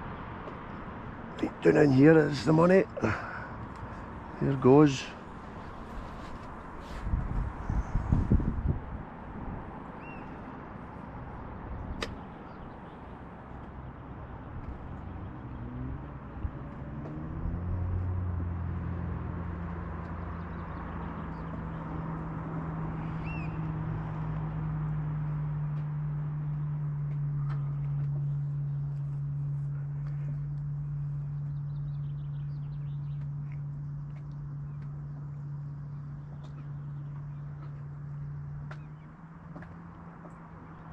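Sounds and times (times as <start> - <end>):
low engine hum: 0.0 - 40.9
faint bird chirps: 23.0 - 23.7.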